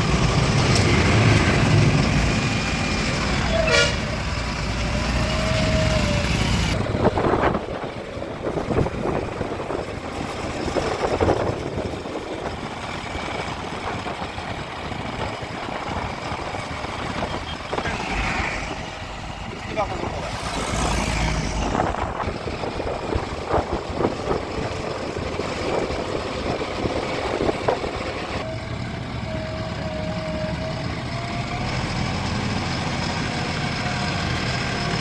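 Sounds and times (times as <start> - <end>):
diesel engines running: 0.0 - 35.0
short horn toot: 3.5 - 4.2.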